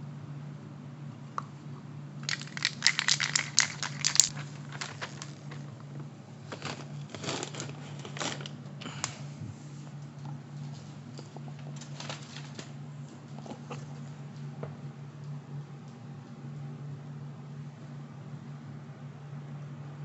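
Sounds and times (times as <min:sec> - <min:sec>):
steady low hum: 0:00.0 - 0:20.0
sharp crinkling clicks: 0:02.2 - 0:09.1.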